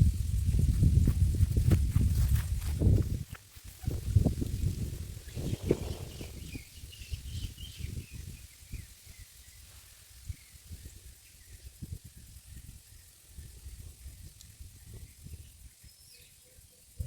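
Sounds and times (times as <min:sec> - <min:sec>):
bird chirping: 0:05.2 - 0:09.6, 0:14.9 - 0:17.0.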